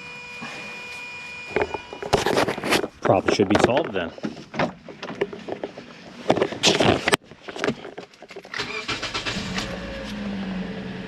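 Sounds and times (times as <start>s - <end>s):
car engine starting and idling: 8.5s - 11.0s.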